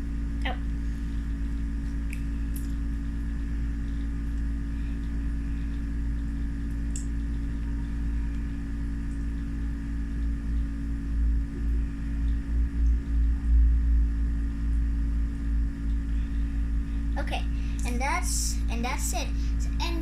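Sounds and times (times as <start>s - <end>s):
motor humming: 0.0s - 20.0s.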